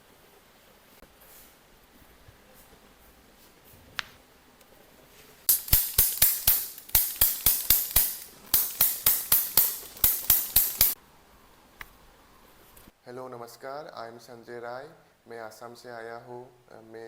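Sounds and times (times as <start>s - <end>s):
sharp percussive strikes: 5.5s - 11.0s.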